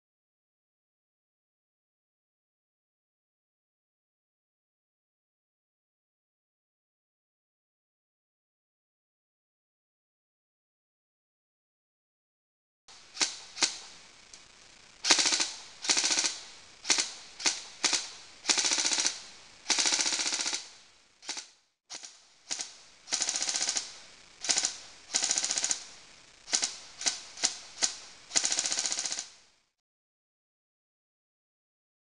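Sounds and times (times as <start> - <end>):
airsoft rifle firing: 13.1 - 14.0, 15.0 - 29.5.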